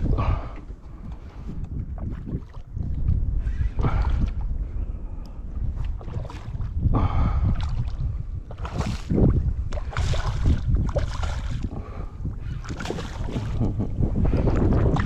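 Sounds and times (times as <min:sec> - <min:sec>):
wind buffeting microphone: 0:00.0 - 0:15.0
waves slapping kayak hull: 0:08.5 - 0:15.0.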